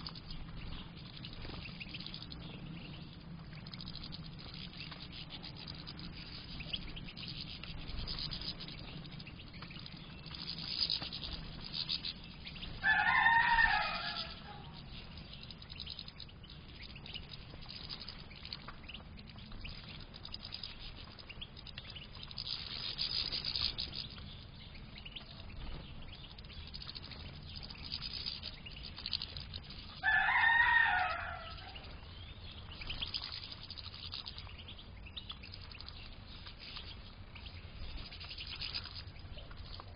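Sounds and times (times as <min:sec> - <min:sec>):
birds chirping faintly: 0:00.0 - 0:39.9
birds rustling in cage: 0:00.0 - 0:39.9
rooster crowing: 0:12.8 - 0:14.8, 0:30.0 - 0:31.9.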